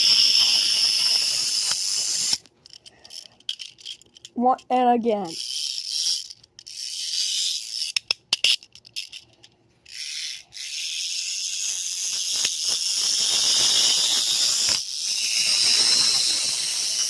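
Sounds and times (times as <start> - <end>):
harsh rattling hiss: 0.0 - 2.4, 10.0 - 17.0.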